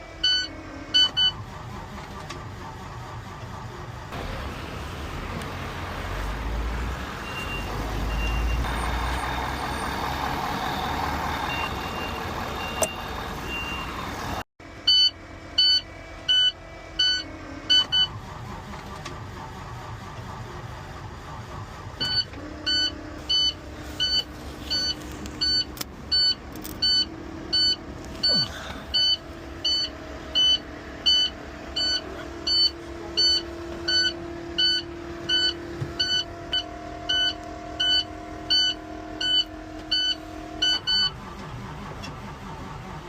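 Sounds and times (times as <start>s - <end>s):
vehicle rumble: 0.0s - 43.0s
short electronic beeps: 7.2s - 8.6s, 10.7s - 14.0s.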